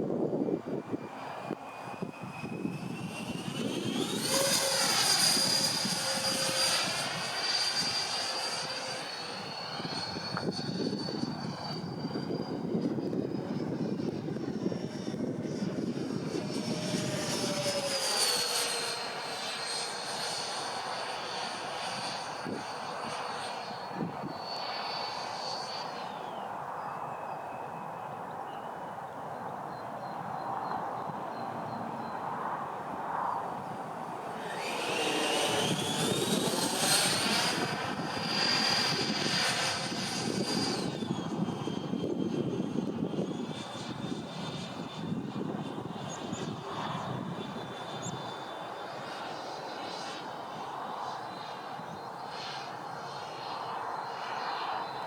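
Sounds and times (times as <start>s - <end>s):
model jet electric fans whining: 0.0s - 28.2s, 32.6s - 55.0s.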